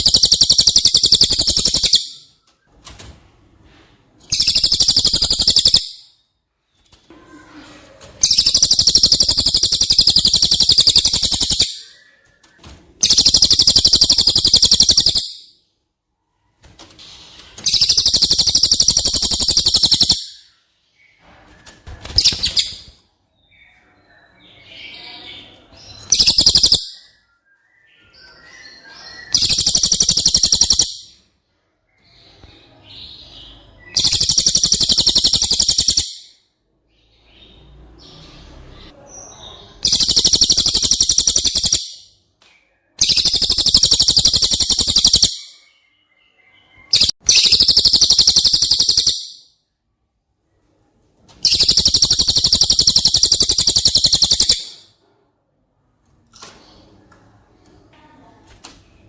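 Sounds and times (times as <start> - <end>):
bird singing trilled phrases: 0.0 - 2.8, 4.3 - 6.2, 8.2 - 15.7, 17.6 - 21.2, 22.0 - 31.2, 33.1 - 36.4, 39.7 - 49.6, 51.4 - 54.9.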